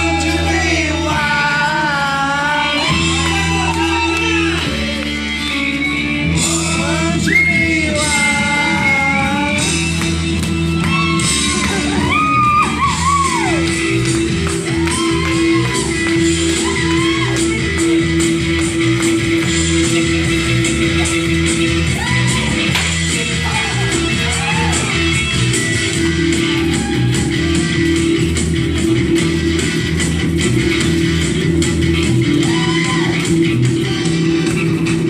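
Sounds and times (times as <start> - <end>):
shouted vocals: 0.0 - 5.0, 14.6 - 17.6, 21.8 - 25.2, 32.3 - 33.4
person singing: 0.0 - 10.0
live band playing: 0.0 - 35.0.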